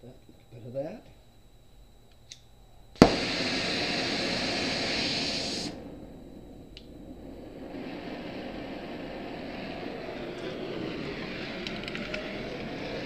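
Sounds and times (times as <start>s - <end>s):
sharp crack: 3.0s - 13.0s
welding hissing rush: 3.0s - 13.0s.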